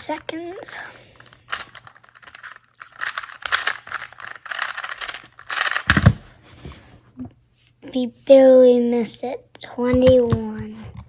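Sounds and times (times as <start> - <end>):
puzzle cube clicking: 1.5 - 6.2.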